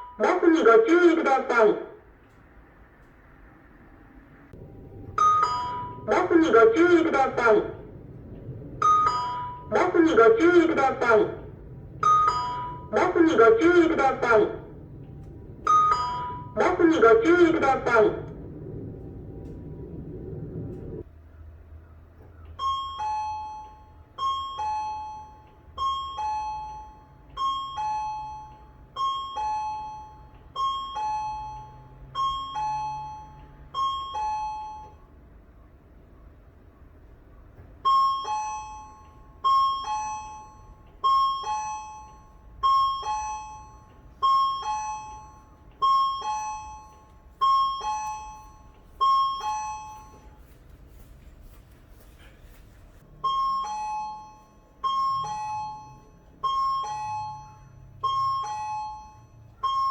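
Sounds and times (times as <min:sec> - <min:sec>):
high-then-low two-tone chime: 0:04.6 - 0:06.3, 0:11.4 - 0:21.0.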